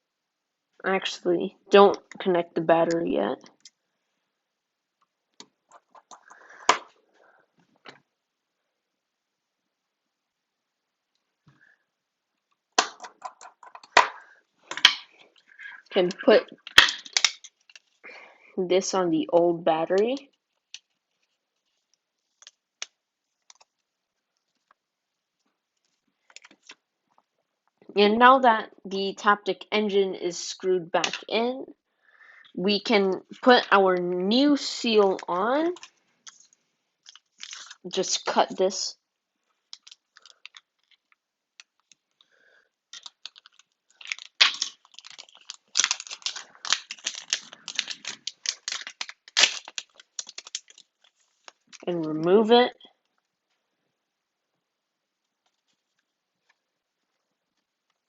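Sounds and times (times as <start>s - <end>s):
plastic packaging crinkling: 5.6s - 7.0s, 12.8s - 18.2s, 20.0s - 24.8s, 34.9s - 38.4s, 39.4s - 52.0s.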